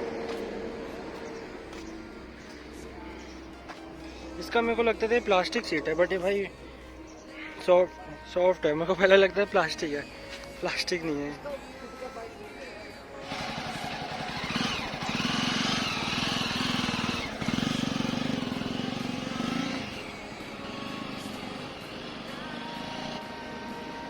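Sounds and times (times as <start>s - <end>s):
motorcycle engine running: 0.0s - 7.2s, 13.2s - 24.0s.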